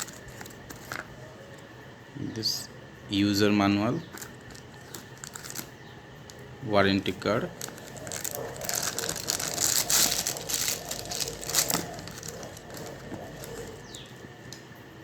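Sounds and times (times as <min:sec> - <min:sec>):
packaging crinkling and rustling: 0:00.0 - 0:01.2, 0:04.1 - 0:06.5, 0:07.1 - 0:14.3.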